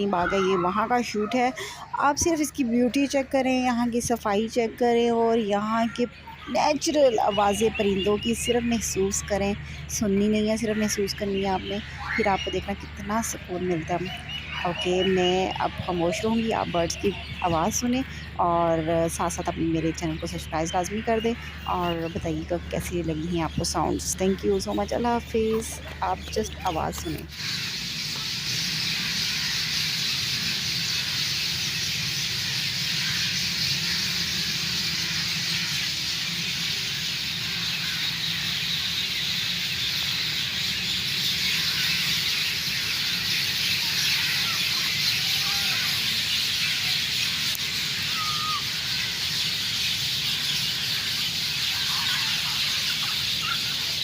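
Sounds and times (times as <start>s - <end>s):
birds chirping and calling: 0.0s - 54.0s.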